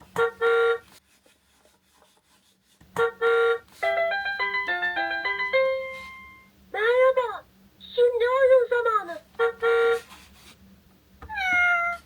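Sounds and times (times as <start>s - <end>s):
toy horn beeps: 0.2s - 0.9s, 3.0s - 3.7s, 9.4s - 10.1s.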